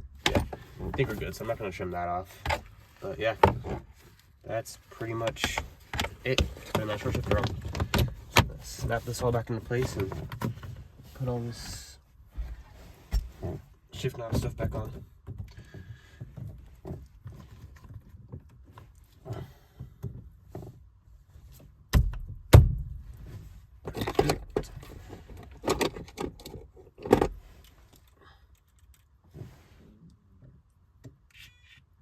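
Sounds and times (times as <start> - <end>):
sharp knocks: 21.9 - 23.0.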